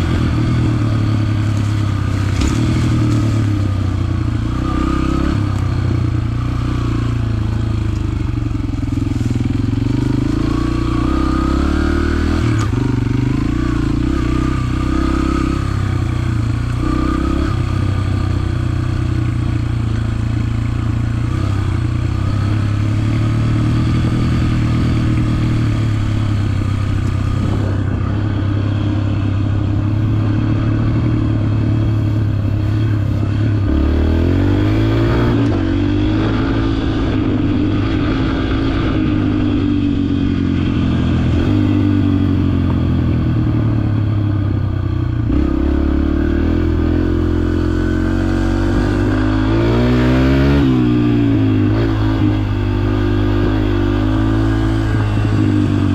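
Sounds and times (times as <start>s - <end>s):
bike rattling: 0.0s - 4.3s, 7.9s - 11.2s
motorbike engine running: 0.0s - 55.9s.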